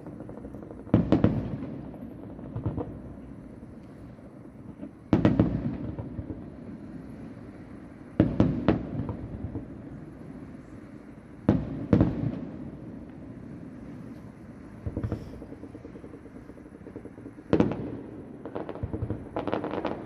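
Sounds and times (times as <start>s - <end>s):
distant fireworks bangs: 0.0s - 7.2s, 11.4s - 13.7s, 14.4s - 20.0s.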